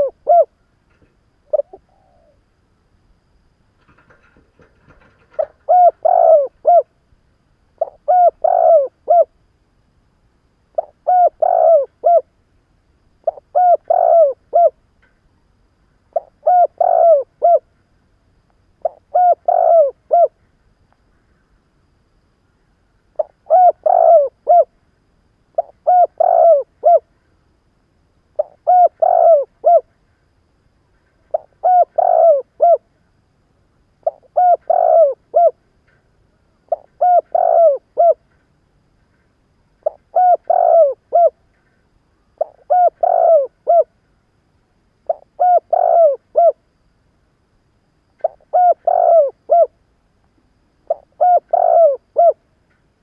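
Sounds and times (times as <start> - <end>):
dove cooing: 0.0 - 0.6, 1.4 - 2.4, 3.8 - 7.0, 7.8 - 9.4, 10.7 - 12.3, 13.2 - 14.8, 16.1 - 17.7, 18.8 - 20.4, 23.2 - 24.7, 25.6 - 27.1, 28.4 - 29.9, 31.3 - 32.9, 34.0 - 35.6, 36.7 - 38.2, 39.8 - 41.4, 42.4 - 43.9, 45.0 - 46.6, 48.2 - 49.8, 50.8 - 52.4.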